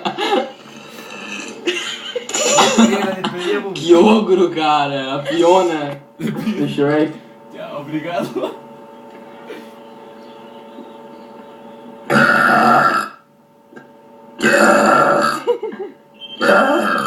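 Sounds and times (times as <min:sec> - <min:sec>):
loud human burps: 0:00.0 - 0:03.4, 0:12.1 - 0:15.6, 0:16.4 - 0:17.0
faint steady hum: 0:00.0 - 0:17.0.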